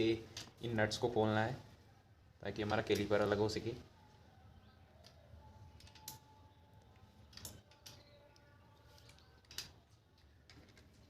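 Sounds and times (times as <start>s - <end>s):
faint metallic clicks: 5.0s - 10.9s.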